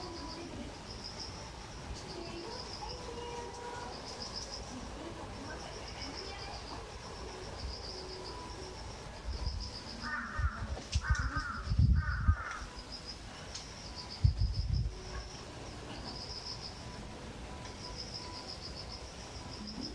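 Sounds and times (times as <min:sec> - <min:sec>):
insects chirping: 0:00.0 - 0:19.9
crow cawing: 0:10.0 - 0:12.7.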